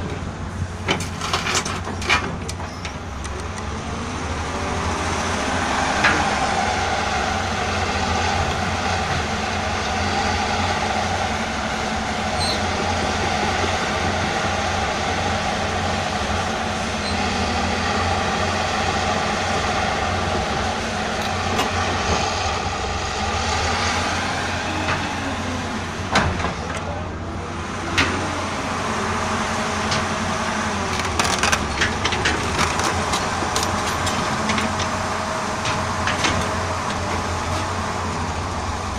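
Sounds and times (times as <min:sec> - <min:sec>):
excavator diesel engine: 0:00.0 - 0:38.9
rattling clicks and clanks: 0:00.8 - 0:03.7, 0:30.8 - 0:37.6.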